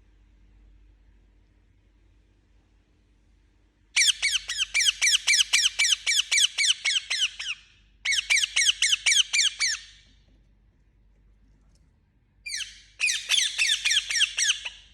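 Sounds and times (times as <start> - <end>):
parakeet squawking: 4.0 - 10.0, 12.5 - 14.9.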